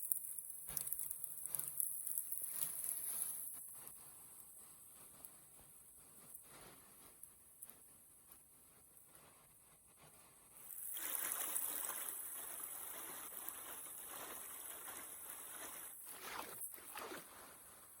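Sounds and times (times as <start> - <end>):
stream water rushing: 10.9 - 17.5.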